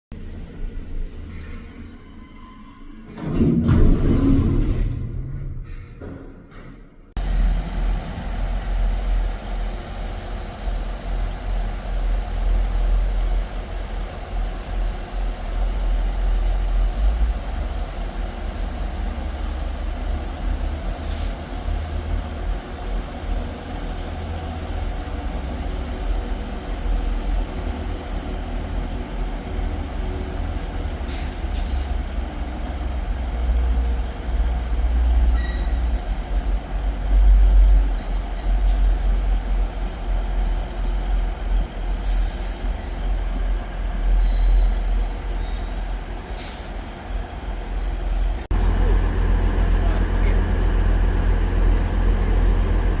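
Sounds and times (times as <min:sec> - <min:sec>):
air hissing: 0:21.0 - 0:21.4, 0:42.0 - 0:42.8
diesel engine idling: 0:48.4 - 0:53.0.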